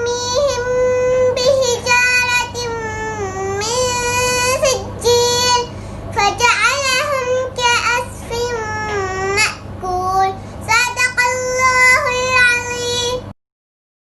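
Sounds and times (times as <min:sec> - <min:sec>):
girl chanting recitation: 0:00.0 - 0:13.3.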